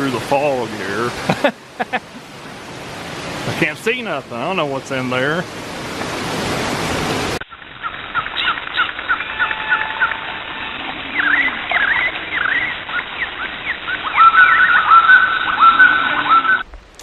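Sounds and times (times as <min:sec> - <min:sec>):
songbirds chirping: 0:07.8 - 0:16.6
bird whistled notes: 0:08.2 - 0:16.6.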